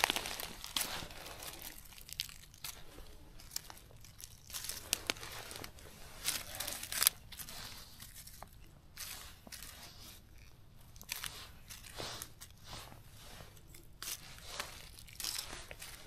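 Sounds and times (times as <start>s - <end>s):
twigs snapping: 0.0s - 7.5s
dry leaves and twigs rustling: 0.0s - 16.0s.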